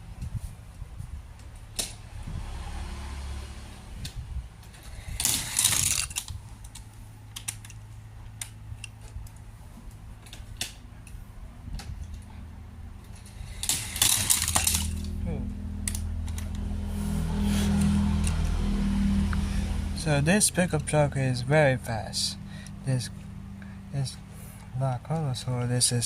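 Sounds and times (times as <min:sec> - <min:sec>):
toy cars clattering on track: 0:04.7 - 0:07.8, 0:13.1 - 0:15.1.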